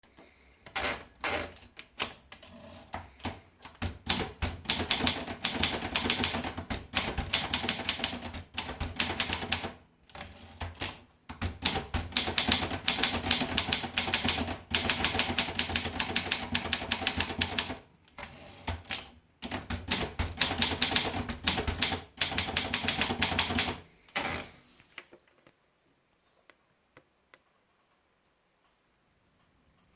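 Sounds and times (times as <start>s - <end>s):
typewriter keys clacking: 3.2s - 17.8s, 18.7s - 23.8s.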